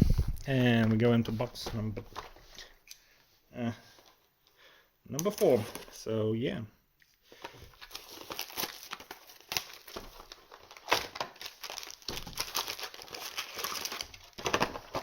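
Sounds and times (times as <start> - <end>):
plastic packaging crinkling and tearing: 7.3 - 15.0.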